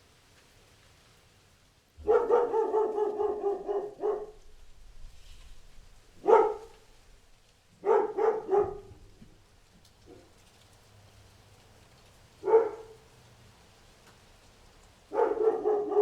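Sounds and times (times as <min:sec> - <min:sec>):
dog barking: 0:02.0 - 0:04.4, 0:06.2 - 0:06.9, 0:07.8 - 0:09.2, 0:10.1 - 0:10.4, 0:12.4 - 0:13.1, 0:15.1 - 0:16.0.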